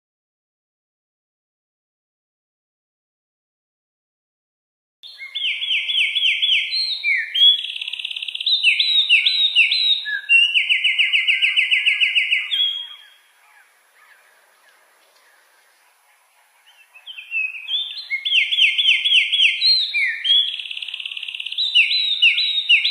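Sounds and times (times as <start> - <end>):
faint bird chirps: 5.0 - 22.9
songbird singing: 5.0 - 22.9
soft hiss: 13.0 - 17.6.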